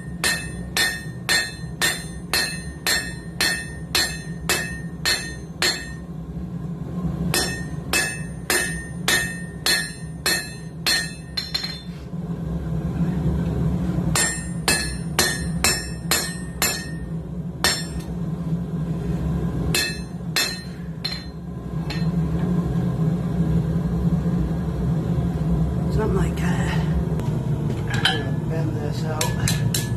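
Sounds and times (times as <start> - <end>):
hammer ringing on anvil: 0.0 - 6.1, 7.3 - 11.9, 14.1 - 18.1, 19.7 - 22.2, 29.2 - 29.9
steady low hum: 0.0 - 29.9.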